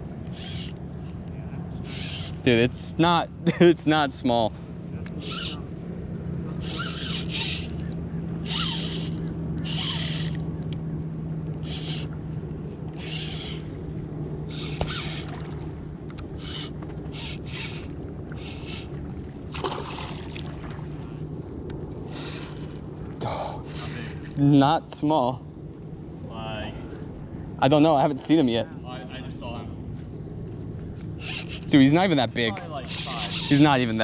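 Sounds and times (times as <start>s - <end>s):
steady low hum: 0.0s - 34.0s
fishing reel cranking: 0.3s - 0.8s, 1.9s - 2.4s, 5.2s - 5.6s, 6.6s - 10.6s, 11.5s - 12.2s, 12.8s - 13.7s, 14.5s - 15.5s, 16.4s - 18.9s, 22.0s - 22.8s, 23.6s - 24.4s, 31.2s - 31.8s, 32.7s - 34.0s.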